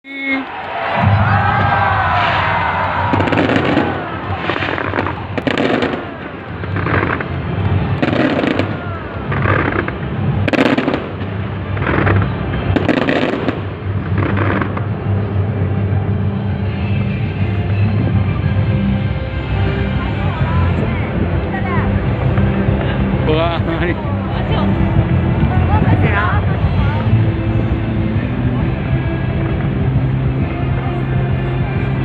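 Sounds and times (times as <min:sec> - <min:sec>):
fireworks bursting: 0:00.8 - 0:18.0
loud show music with bass: 0:14.0 - 0:32.0.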